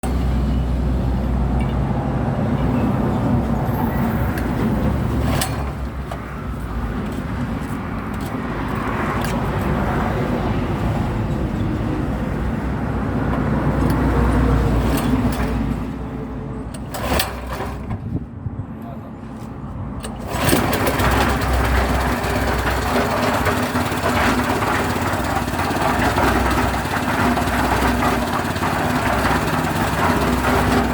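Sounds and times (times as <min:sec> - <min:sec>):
concrete mixer droning: 0:16.8 - 0:18.2, 0:20.1 - 0:30.9.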